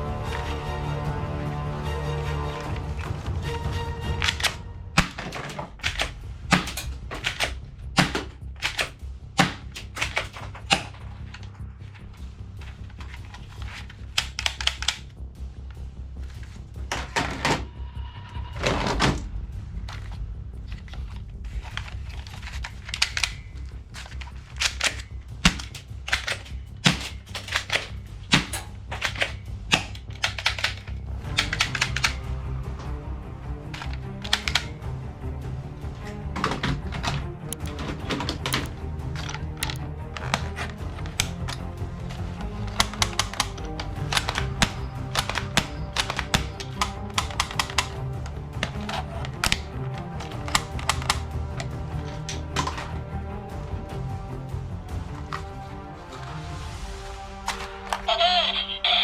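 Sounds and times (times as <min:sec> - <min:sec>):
background music: 0:00.0 - 0:59.0
toy guns clicking and snapping: 0:04.2 - 0:11.5, 0:13.1 - 0:15.1, 0:21.7 - 0:32.2, 0:33.7 - 0:34.8, 0:36.5 - 0:41.7, 0:42.5 - 0:53.0.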